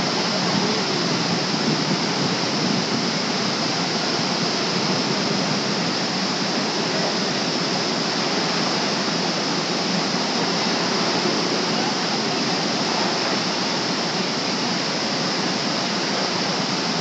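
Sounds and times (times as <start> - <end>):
waterfall rushing: 0.0 - 17.0.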